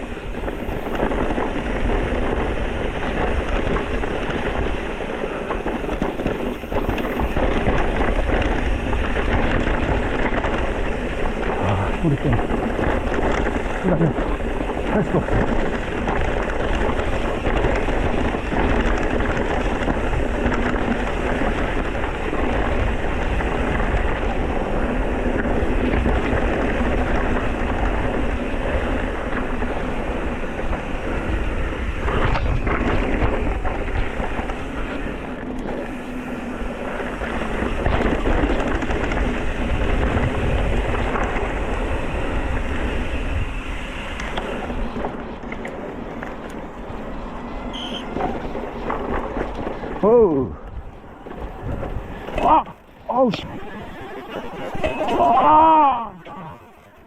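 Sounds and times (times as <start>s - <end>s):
tyres rumbling over rough trail: 0.0s - 57.0s
wind on microphone: 0.0s - 57.0s.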